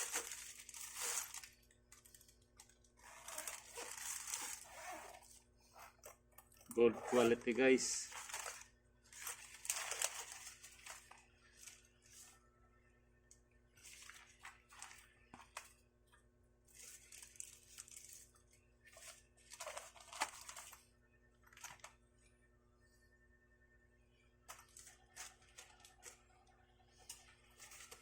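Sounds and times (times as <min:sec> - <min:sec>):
plastic packaging crinkling: 0:00.0 - 0:05.4, 0:06.7 - 0:12.2, 0:16.7 - 0:20.8.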